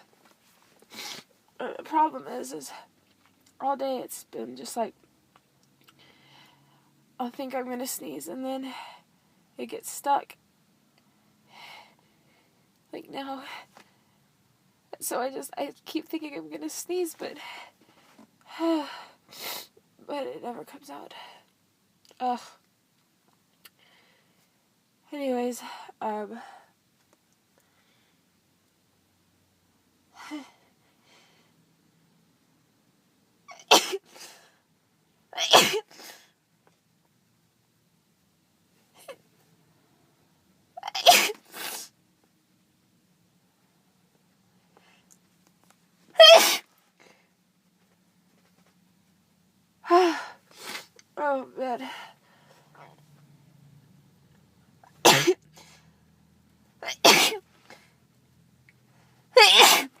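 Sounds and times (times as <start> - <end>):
person sneezing: 33.5 - 34.4, 35.4 - 36.2, 40.8 - 41.9, 46.2 - 46.7, 54.9 - 55.7, 56.8 - 57.4, 59.4 - 60.0.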